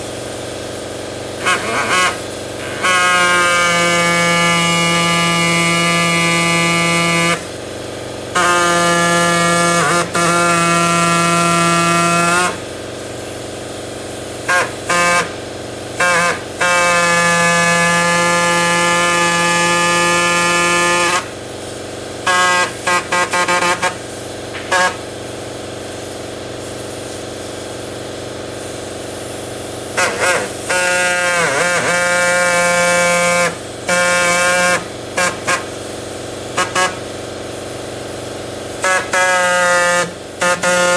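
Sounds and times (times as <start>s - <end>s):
power tool whining: 1.4s - 7.5s, 8.3s - 12.7s, 14.4s - 15.4s, 16.0s - 21.4s, 22.2s - 25.0s, 29.9s - 35.7s, 36.6s - 37.0s, 38.8s - 40.9s.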